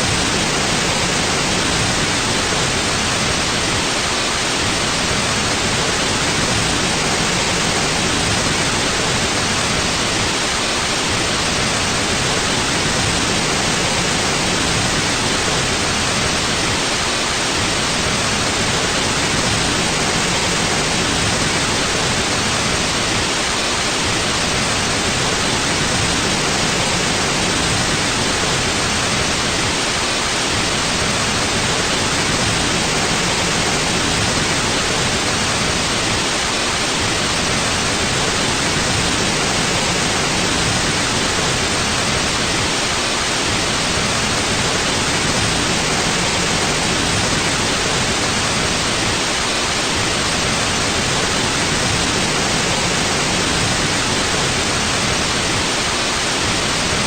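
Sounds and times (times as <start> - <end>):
white noise hiss: 0.0 - 57.0.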